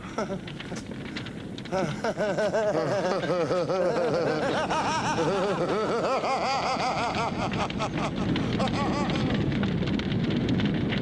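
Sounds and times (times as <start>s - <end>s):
person laughing: 0.0s - 0.6s, 1.7s - 9.5s.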